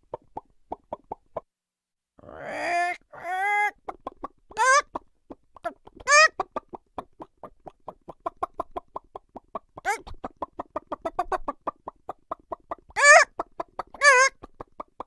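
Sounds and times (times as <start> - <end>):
chickens clucking: 0.0 - 1.4, 2.3 - 15.0
chicken squawking: 2.2 - 5.0, 5.6 - 8.6, 9.5 - 11.8, 12.7 - 14.5.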